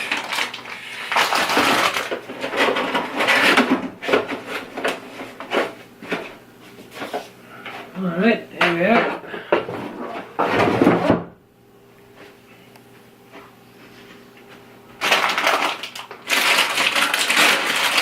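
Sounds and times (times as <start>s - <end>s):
packaging rustling and crinkling: 0.0s - 5.8s, 15.0s - 18.0s.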